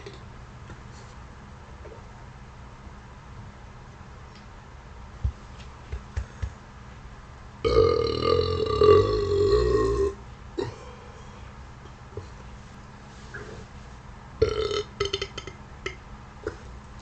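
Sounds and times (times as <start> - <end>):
long loud burp: 7.6 - 10.8, 14.4 - 15.5.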